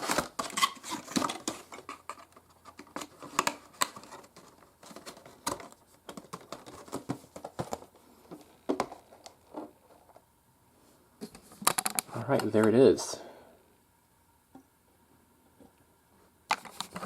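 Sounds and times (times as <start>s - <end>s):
packaging being handled: 0.0s - 9.4s.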